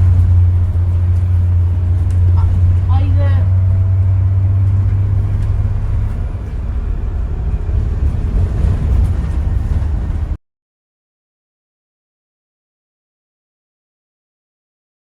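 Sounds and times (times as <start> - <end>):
vehicle engine drone and road rumble: 0.0 - 10.4.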